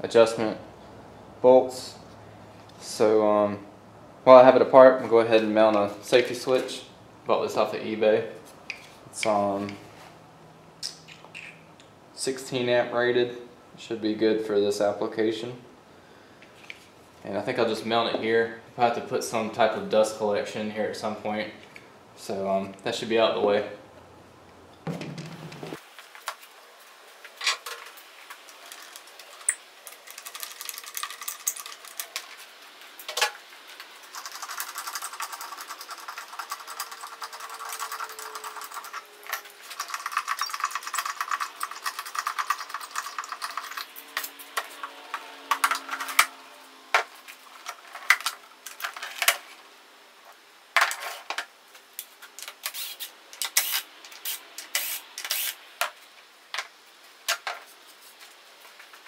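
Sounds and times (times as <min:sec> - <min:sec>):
rubbing and scraping on wood: 0:33.6 - 0:46.3.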